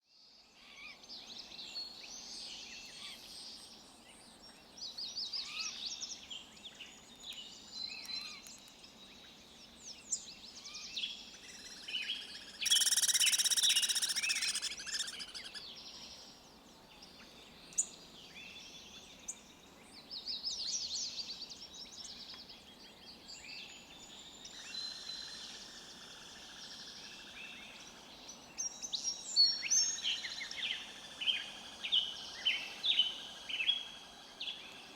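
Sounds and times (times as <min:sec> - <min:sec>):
faint outdoor hiss: 0:00.1 - 0:34.9
songbirds chirping and whistling: 0:00.8 - 0:16.4, 0:17.0 - 0:34.9
rapid bird trill: 0:11.5 - 0:15.6.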